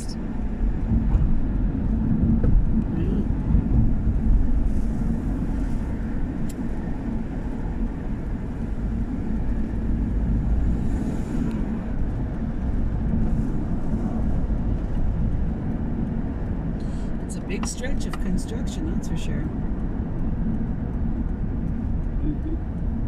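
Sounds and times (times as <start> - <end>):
car engine and tyre rumble: 0.0 - 23.0.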